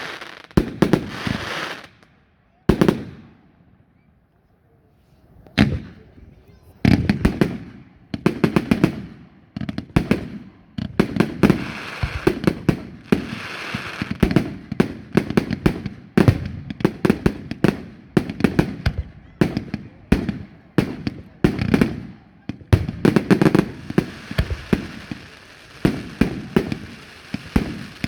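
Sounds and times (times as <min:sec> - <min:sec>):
fireworks hissing: 0:00.0 - 0:01.9, 0:11.5 - 0:12.4, 0:23.1 - 0:28.0
fireworks bangs: 0:00.0 - 0:02.1, 0:05.6 - 0:28.0.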